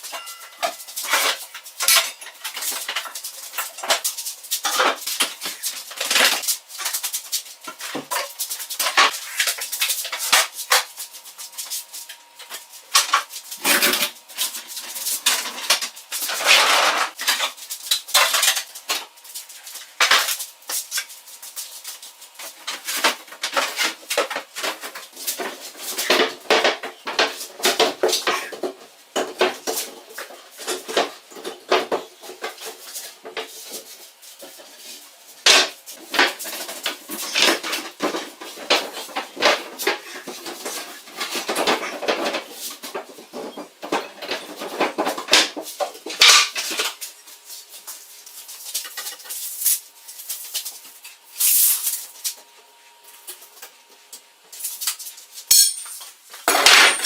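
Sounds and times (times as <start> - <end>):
small metal objects clinking: 55.5 - 57.0.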